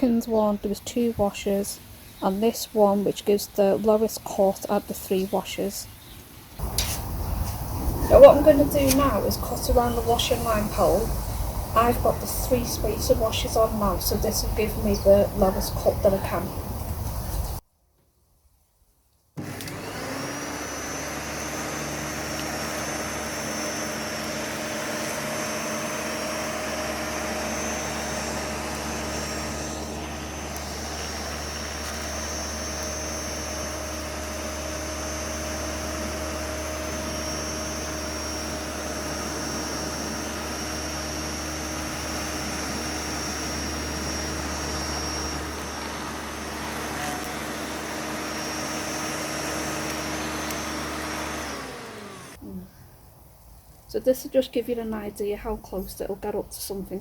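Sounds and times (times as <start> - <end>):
electric lawnmower motor whine: 6.6 - 17.6, 19.4 - 52.5.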